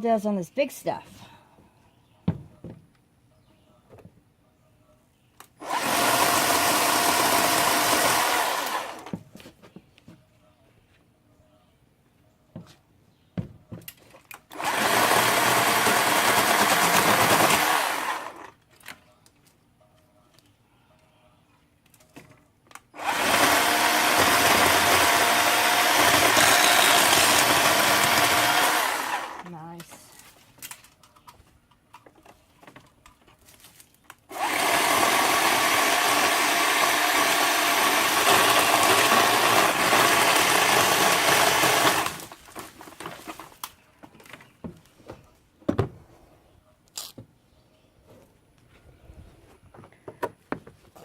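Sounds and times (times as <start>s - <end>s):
electric chainsaw cutting: 5.6s - 9.1s, 14.5s - 18.5s, 23.0s - 29.5s, 34.3s - 42.4s
branches clicking and snapping: 32.8s - 34.2s, 41.6s - 44.5s.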